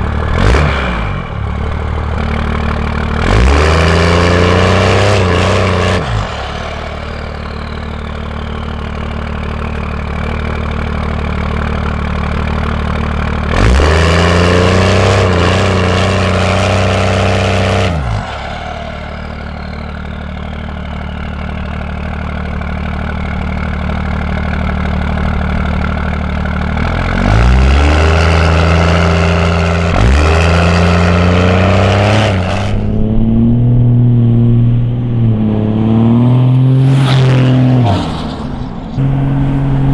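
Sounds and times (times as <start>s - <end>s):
diesel engine driving: 0.0s - 39.9s
high turbo whistle: 3.3s - 11.8s, 14.4s - 24.3s, 27.4s - 39.9s.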